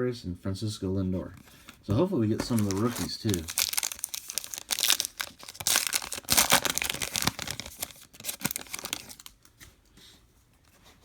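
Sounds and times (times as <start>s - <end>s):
wrapper tearing and crinkling: 2.4s - 9.5s.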